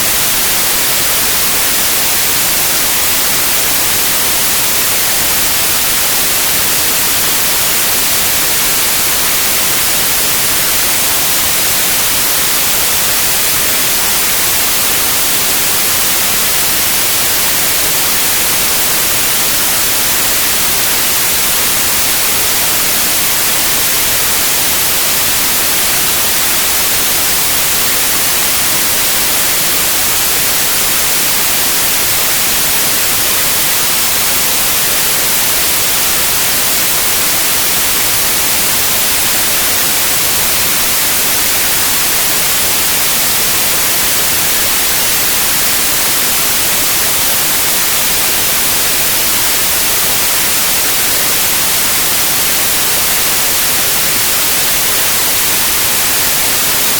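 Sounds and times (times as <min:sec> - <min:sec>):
white noise hiss: 0:00.0 - 0:56.9.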